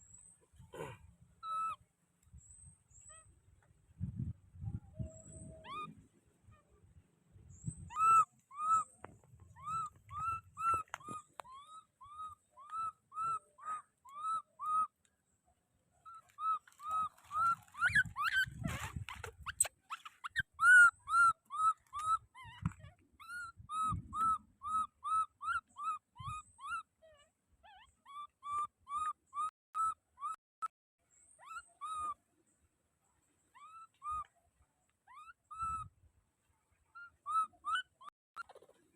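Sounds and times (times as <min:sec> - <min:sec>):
baby monkey crying: 0:01.4 - 0:01.8, 0:05.6 - 0:05.9, 0:07.9 - 0:08.9, 0:09.6 - 0:14.9, 0:16.1 - 0:30.4, 0:31.4 - 0:32.2, 0:33.6 - 0:34.3, 0:37.0 - 0:38.7.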